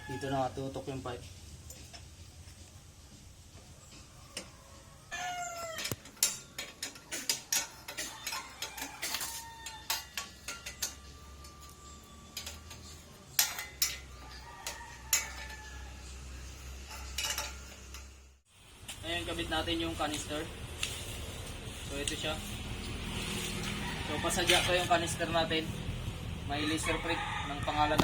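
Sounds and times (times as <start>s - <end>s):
metal clinks of tools and parts: 5.4s - 15.9s, 16.5s - 18.2s.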